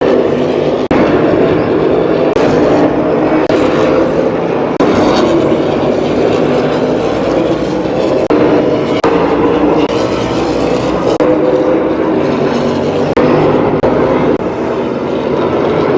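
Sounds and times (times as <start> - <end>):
race car engines running: 0.0 - 15.9.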